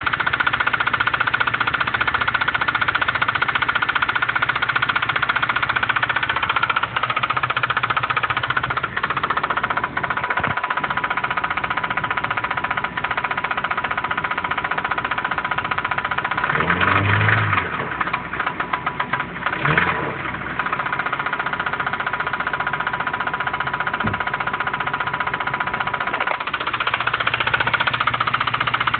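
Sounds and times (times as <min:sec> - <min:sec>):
car engine idling: 0:00.0 - 0:28.9
rapid engine knock: 0:00.0 - 0:28.9
engine revving: 0:16.3 - 0:18.4, 0:19.0 - 0:20.8.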